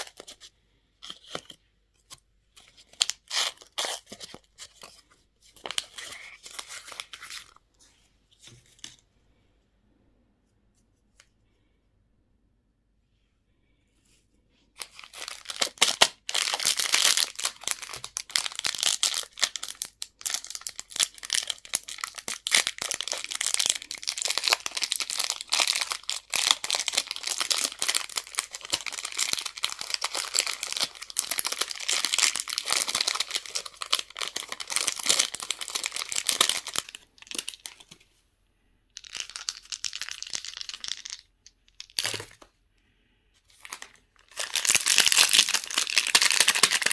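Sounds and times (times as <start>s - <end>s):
candy wrapper crinkling: 0.0s - 1.6s, 2.6s - 5.0s, 5.6s - 7.6s, 14.8s - 38.0s, 39.0s - 42.5s, 43.5s - 46.9s.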